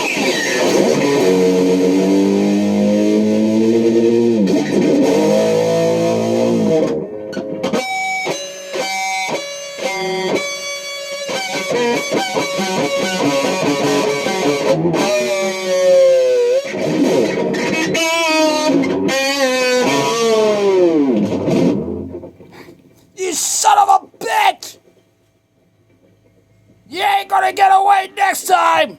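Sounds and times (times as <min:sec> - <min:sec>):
electric guitar melody: 0:00.0 - 0:23.1.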